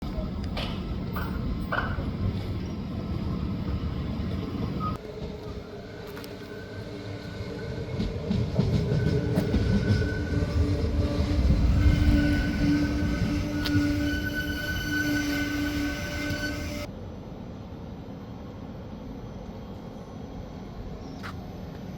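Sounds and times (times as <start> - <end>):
train rumbling: 0.0 - 21.9
train whining tones: 2.0 - 16.9.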